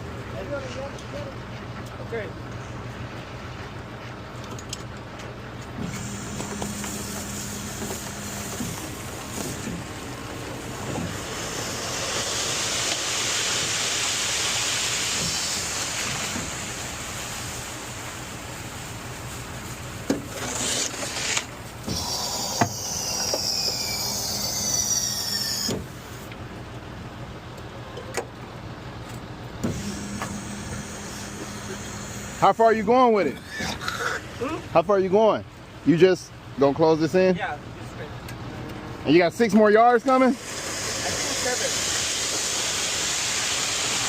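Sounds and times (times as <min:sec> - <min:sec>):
rushing hiss: 0:05.9 - 0:26.2, 0:40.3 - 0:44.0
falling whine: 0:21.8 - 0:25.8, 0:29.6 - 0:33.3.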